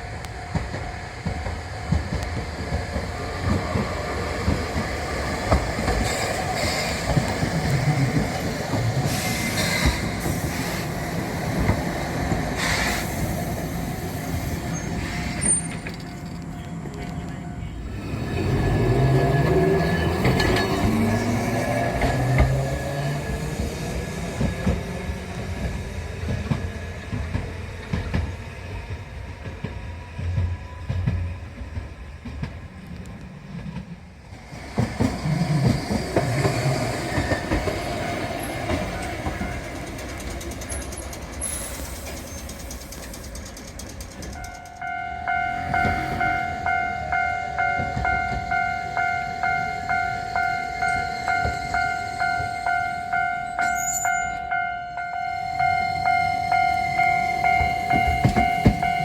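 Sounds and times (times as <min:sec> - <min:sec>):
rail vehicles clattering over tracks: 0:00.0 - 0:59.0
level crossing warning bell: 0:37.5 - 0:40.0, 0:44.2 - 0:59.0.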